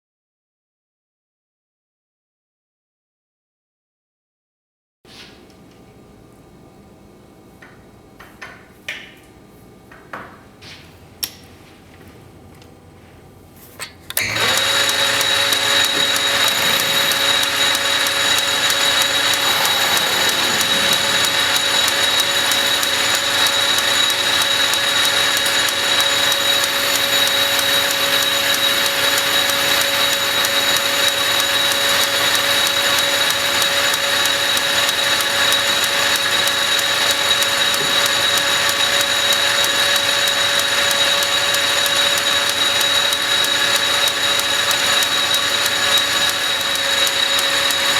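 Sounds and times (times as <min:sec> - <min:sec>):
high whine of lathe: 0:14.1 - 0:47.9
metal lathe motor hum: 0:14.1 - 0:47.9.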